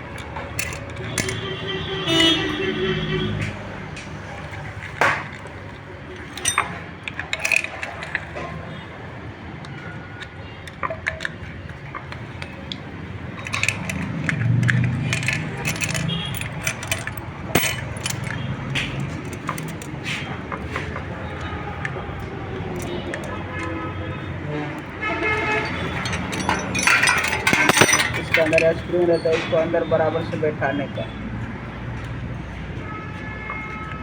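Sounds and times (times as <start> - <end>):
metallic clinks of tools and bolts: 0.1 - 2.7, 4.7 - 8.6, 9.7 - 22.0, 22.7 - 23.8, 25.0 - 29.5.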